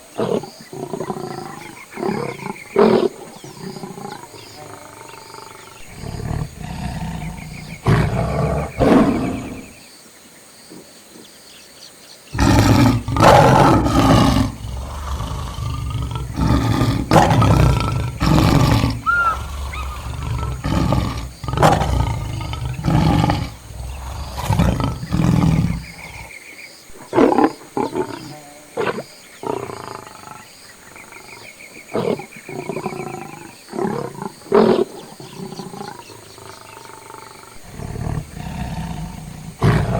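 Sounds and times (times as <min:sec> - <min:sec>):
lions roaring: 0:00.1 - 0:09.8, 0:12.4 - 0:26.3, 0:32.0 - 0:39.9.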